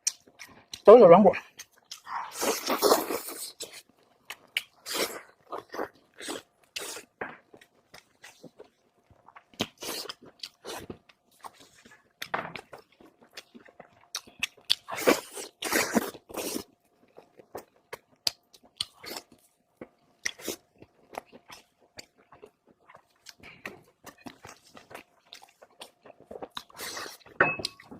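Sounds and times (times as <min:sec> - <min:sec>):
wet chewing: 0:00.0 - 0:27.9.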